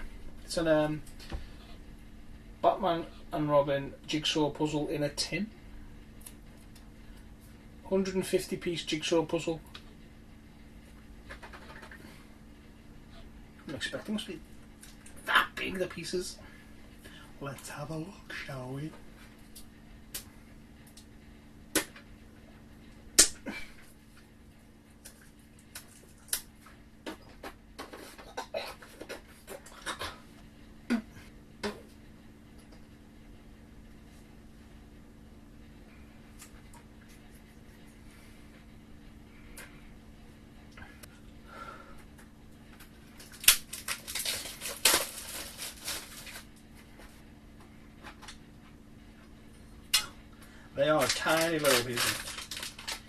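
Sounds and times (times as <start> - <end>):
faint low hum: 0.0 - 53.0
clicks and rustling packaging: 42.7 - 47.1, 50.8 - 53.0
plastic wrapping crinkling and tearing: 43.2 - 46.6, 50.8 - 53.0.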